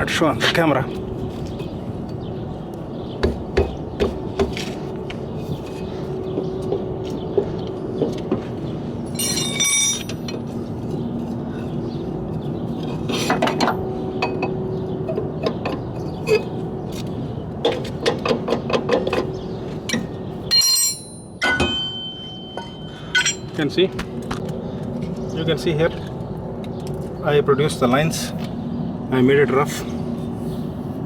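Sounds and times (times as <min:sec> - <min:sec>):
metallic clang: 0:09.1 - 0:10.4, 0:19.9 - 0:23.6
metal parts clinking and rattling: 0:09.1 - 0:11.8, 0:19.9 - 0:23.6.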